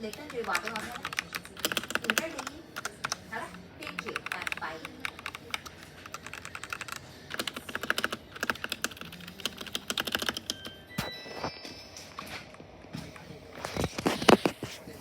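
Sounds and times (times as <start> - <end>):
mechanical keyboard typing: 0.0 - 10.8.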